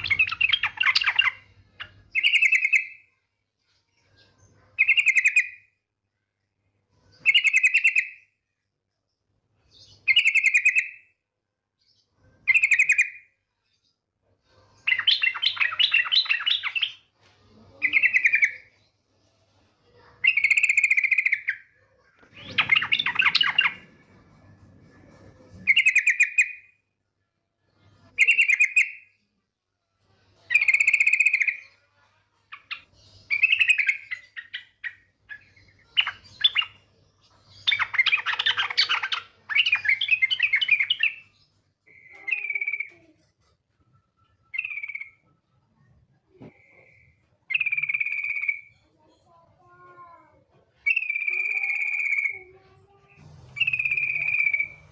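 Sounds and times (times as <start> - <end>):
bird chirpy calls: 0.0 - 3.1, 12.5 - 13.3, 14.8 - 17.1, 20.1 - 24.0, 32.5 - 43.1, 44.3 - 45.5, 46.3 - 48.8, 50.8 - 52.5, 53.2 - 54.9
bird rapid chattering: 22.3 - 23.9.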